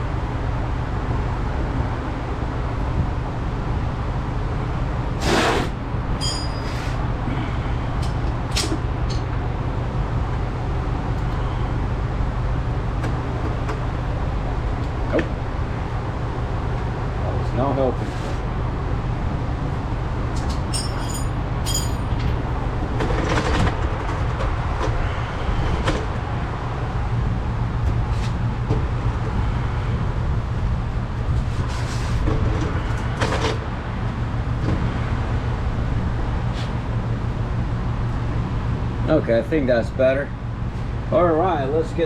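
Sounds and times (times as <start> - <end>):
steady low hum: 0.0 - 42.0
clinks and knocks of handling: 20.5 - 22.3.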